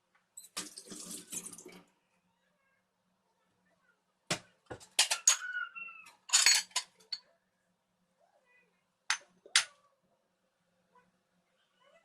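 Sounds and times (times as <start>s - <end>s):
dishes and utensils clinking: 4.7s - 7.2s.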